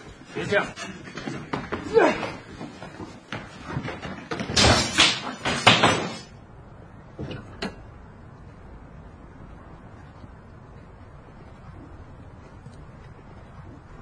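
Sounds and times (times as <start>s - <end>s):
door banging and scraping open: 3.8s - 6.3s.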